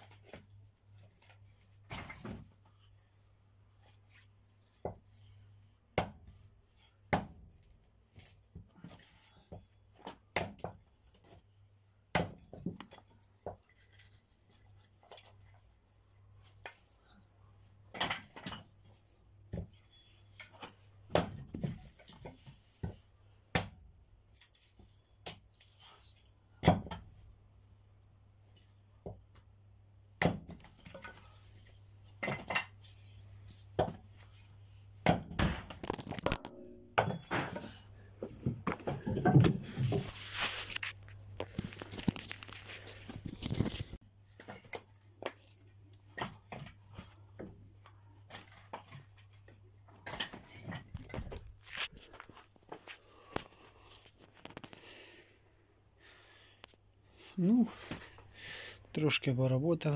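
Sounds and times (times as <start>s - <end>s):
logs knocking together: 38.3s - 40.1s.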